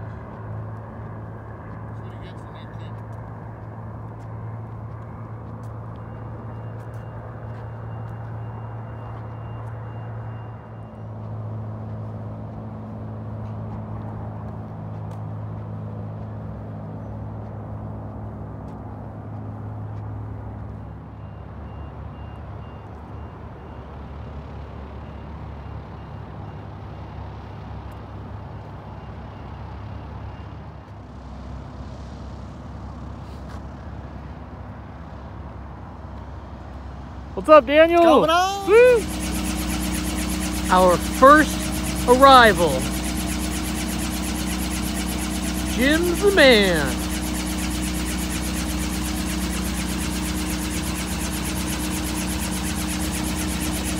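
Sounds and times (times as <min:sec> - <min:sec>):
large vehicle engine humming: 0:23.3 - 0:53.9
faint high-pitched beeping: 0:37.9 - 0:53.9.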